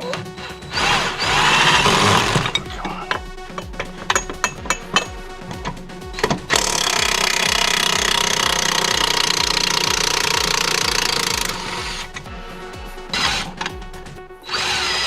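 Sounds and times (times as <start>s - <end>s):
impact wrench running: 0.5s - 12.4s, 13.1s - 15.0s.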